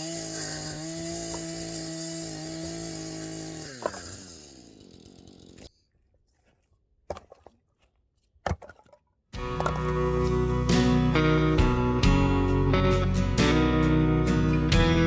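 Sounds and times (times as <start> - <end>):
chainsaw running: 0.0 - 5.7, 9.4 - 15.0
acoustic guitar music: 9.4 - 15.0.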